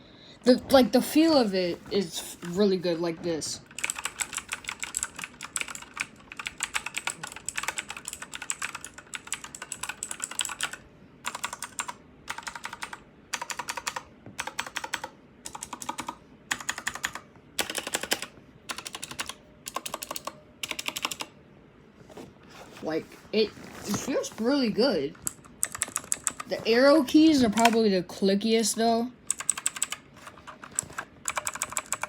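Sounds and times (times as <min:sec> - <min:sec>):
clicky keyboard typing: 0:03.7 - 0:21.3, 0:25.2 - 0:26.5, 0:27.5 - 0:27.8, 0:29.3 - 0:32.0.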